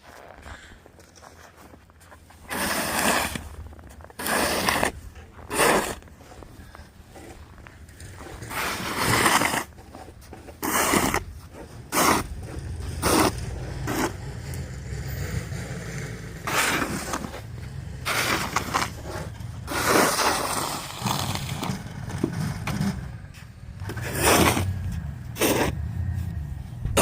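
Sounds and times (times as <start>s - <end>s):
crunching in deep snow: 0.0s - 14.4s, 15.4s - 22.5s
steady low rumble: 11.2s - 20.8s, 21.4s - 27.0s.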